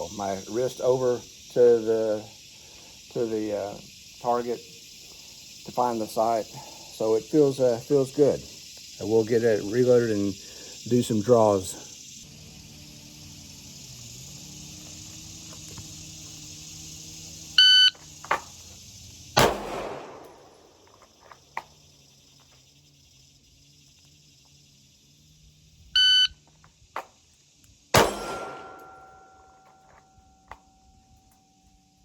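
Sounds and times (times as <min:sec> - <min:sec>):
crickets trilling: 0:00.0 - 0:32.0
pistol shot: 0:19.4 - 0:20.5, 0:27.9 - 0:29.3
shot timer beeps: 0:26.0 - 0:26.3.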